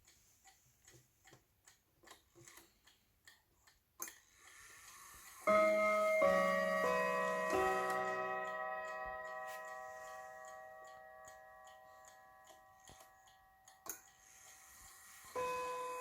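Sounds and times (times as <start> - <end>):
clock ticking: 0.0 - 16.0
clock chiming: 4.4 - 16.0.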